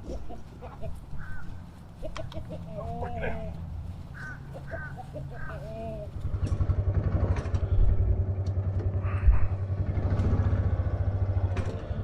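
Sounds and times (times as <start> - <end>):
bird calling: 0.0 - 6.4
engine pulsing: 4.2 - 12.0.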